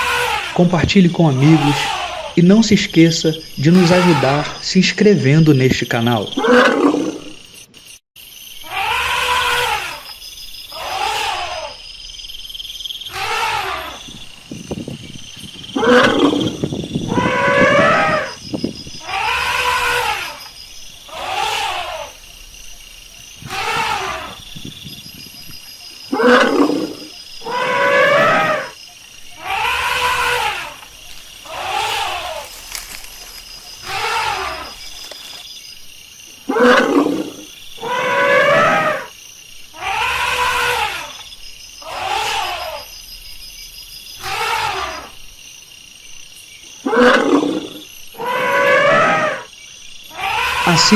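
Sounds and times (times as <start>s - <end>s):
elephant calling: 0.0s - 5.4s, 6.1s - 7.4s, 8.6s - 10.1s, 10.7s - 11.8s, 13.1s - 14.2s, 15.7s - 18.4s, 19.0s - 22.4s, 23.4s - 24.6s, 26.1s - 35.4s, 36.4s - 39.1s, 39.7s - 41.2s, 41.8s - 42.9s, 44.2s - 45.2s, 46.8s - 49.5s, 50.1s - 50.9s.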